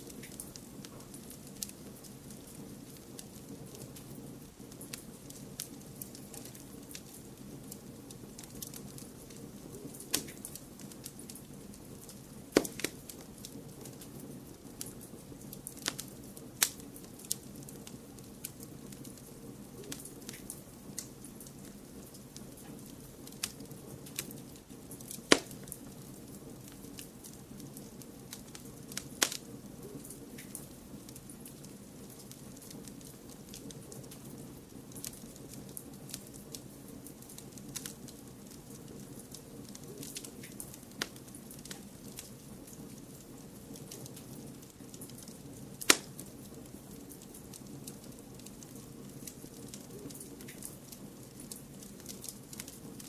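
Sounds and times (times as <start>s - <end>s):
steady low background noise: 0.0s - 53.0s
wood fire crackling and popping: 0.0s - 53.0s.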